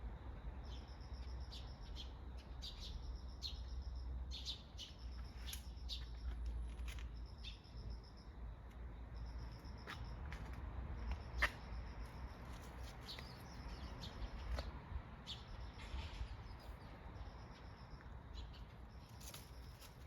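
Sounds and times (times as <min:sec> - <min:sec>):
birds chirping: 0:12.7 - 0:19.9.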